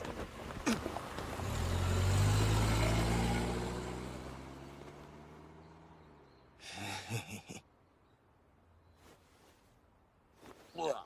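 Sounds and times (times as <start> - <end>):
car engine driving off: 0.6 - 6.4.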